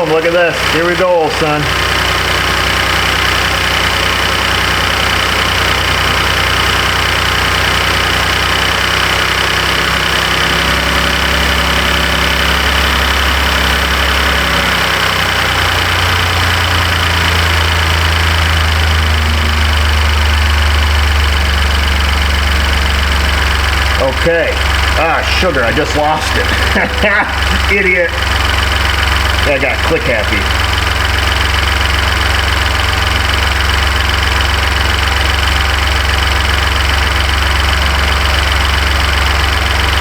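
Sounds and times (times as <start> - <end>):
truck engine idling: 0.0 - 40.0.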